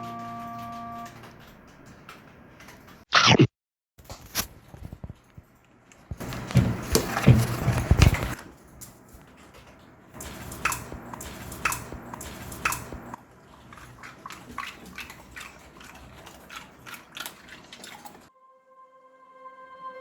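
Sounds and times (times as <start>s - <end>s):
puppy crunching a snack: 13.5s - 18.3s.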